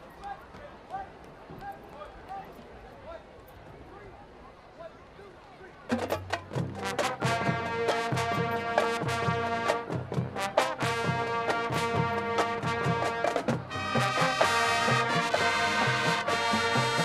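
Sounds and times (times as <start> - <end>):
brass holding chords: 6.8 - 17.0.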